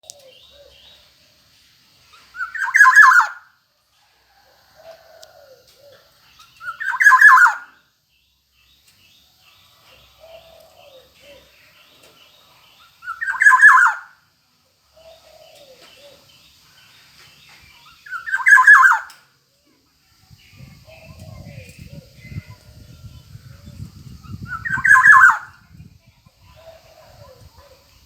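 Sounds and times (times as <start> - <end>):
bird harsh calls: 2.1 - 3.5, 5.4 - 7.8, 10.0 - 14.2, 17.8 - 19.2, 24.2 - 25.6.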